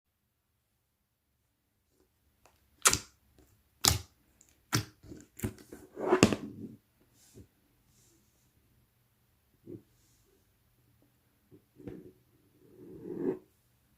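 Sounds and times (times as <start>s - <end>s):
slime squished by hand: 2.8s - 3.2s, 3.8s - 5.6s.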